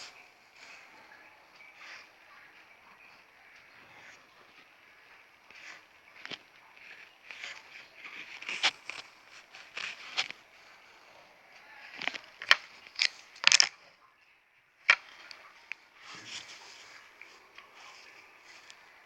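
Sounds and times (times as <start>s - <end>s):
plastic packaging crinkling: 5.5s - 10.7s, 11.8s - 13.8s
sharp plastic clicks and snaps: 11.9s - 13.9s, 14.8s - 15.8s.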